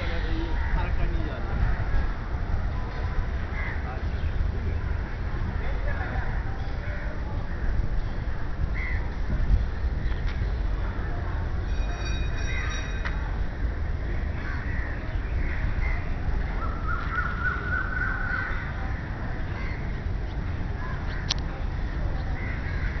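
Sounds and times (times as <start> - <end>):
crows cawing: 3.6 - 3.9, 14.2 - 19.9, 22.4 - 23.0.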